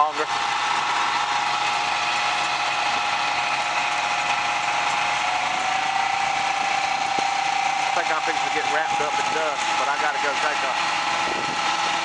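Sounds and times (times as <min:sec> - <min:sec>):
combine harvester running: 0:00.0 - 0:12.0.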